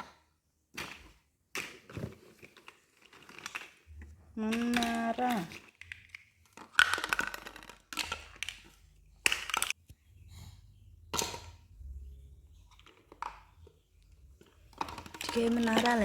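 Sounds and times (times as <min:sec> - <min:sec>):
toy pieces clacking together: 0:00.8 - 0:09.8, 0:14.4 - 0:16.0.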